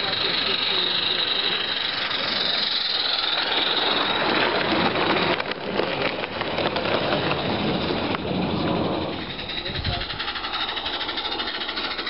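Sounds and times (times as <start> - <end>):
model steam locomotive hissing: 0.0 - 12.0.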